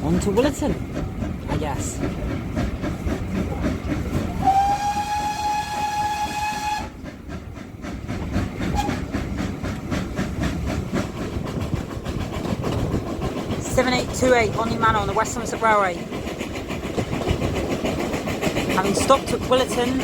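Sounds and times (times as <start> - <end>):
train running rhythmic beats: 0.0 - 20.0
steam locomotive whistle: 4.3 - 7.0, 8.7 - 9.0.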